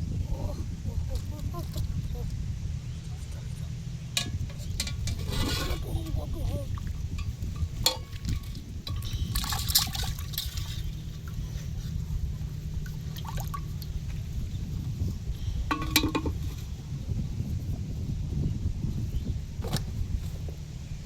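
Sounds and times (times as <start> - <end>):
low rumble: 0.0 - 21.0
water splashing and trickling: 4.2 - 16.6.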